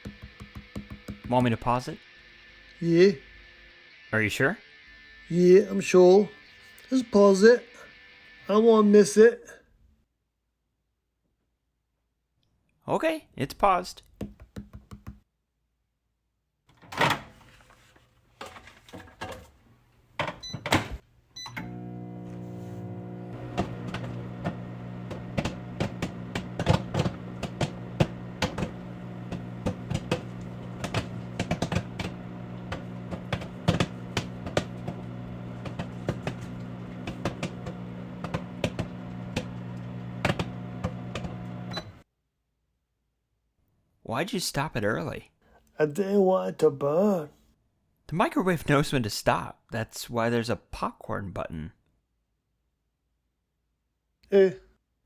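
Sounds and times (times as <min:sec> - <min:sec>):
popcorn popping: 0:00.0 - 0:01.4, 0:23.4 - 0:41.7
microwave oven humming: 0:21.4 - 0:42.0.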